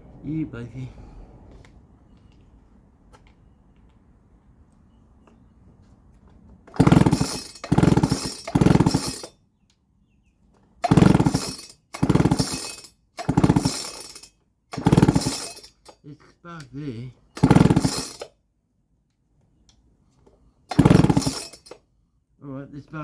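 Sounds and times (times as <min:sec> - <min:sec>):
engine chugging turning over: 0:06.7 - 0:09.3, 0:10.8 - 0:15.9, 0:17.3 - 0:18.3, 0:20.7 - 0:21.8
chainsaw recoil starter pulls: 0:06.7 - 0:09.4, 0:10.8 - 0:16.0, 0:17.3 - 0:18.3, 0:20.7 - 0:21.8.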